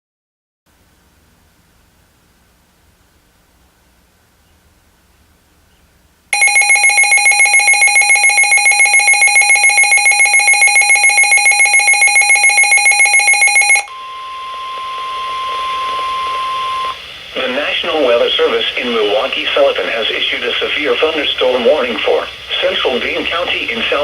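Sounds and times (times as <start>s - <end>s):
pulsing electronic alarm: 6.4s - 17.0s
steady warning tone: 6.4s - 24.0s
radio static: 14.4s - 24.0s.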